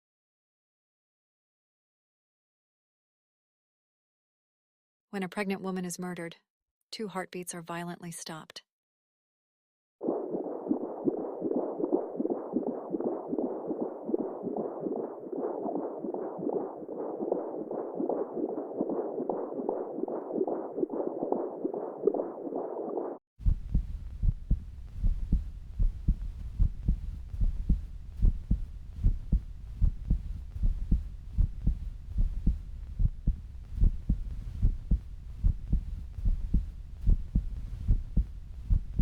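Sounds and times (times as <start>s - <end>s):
adult heartbeat thumps: 10.0s - 39.0s
fetal heartbeat on doppler monitor: 10.0s - 39.0s.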